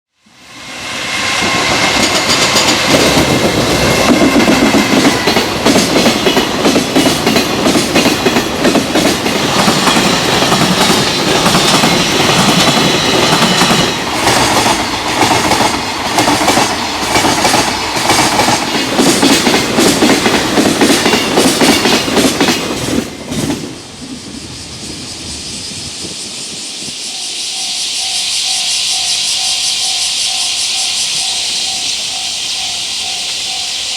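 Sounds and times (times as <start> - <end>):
freight train wheels clattering: 1.4 - 23.9
steady high hiss: 23.1 - 33.9.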